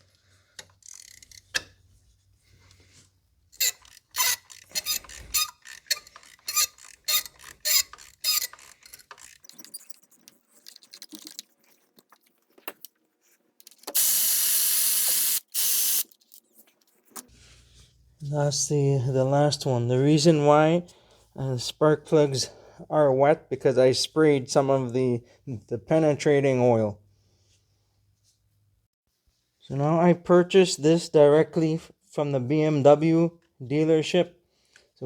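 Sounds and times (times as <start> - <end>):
socket ratchet clicking: 3.6 - 9.6, 13.9 - 16.1.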